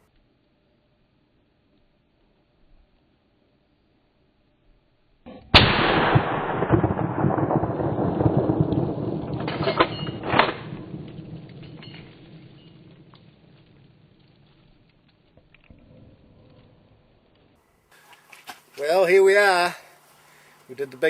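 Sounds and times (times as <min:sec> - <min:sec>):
rifle shot with rolling echo: 0:05.5 - 0:14.2.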